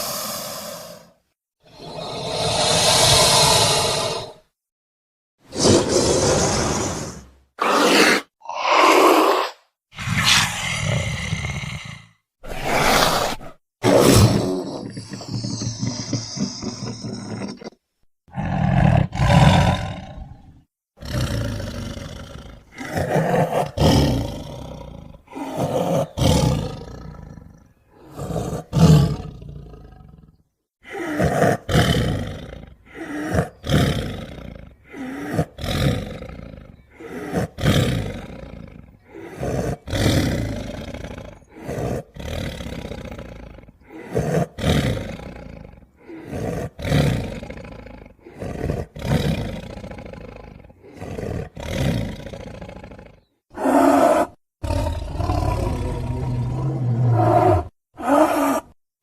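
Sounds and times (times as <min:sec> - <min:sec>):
dinosaur roars and growls: 0:00.0 - 0:04.5, 0:05.5 - 0:58.8.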